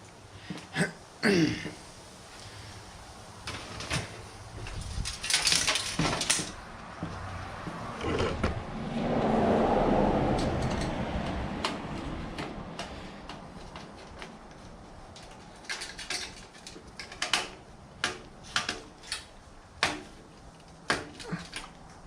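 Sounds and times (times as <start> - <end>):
sharp clicks and knocks: 10.3 - 22.0.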